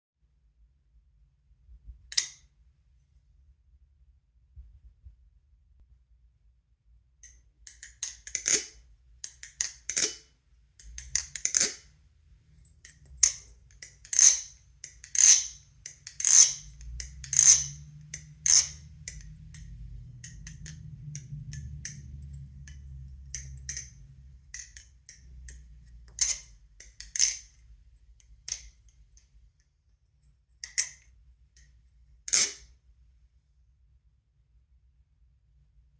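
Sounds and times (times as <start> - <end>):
faint low rumble: 2.7 - 7.2, 17.8 - 26.2.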